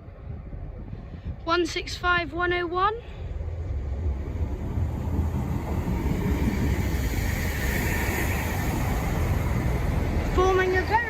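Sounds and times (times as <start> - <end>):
diesel train drone: 0.0 - 11.0
hiss of train wheels: 5.1 - 10.0.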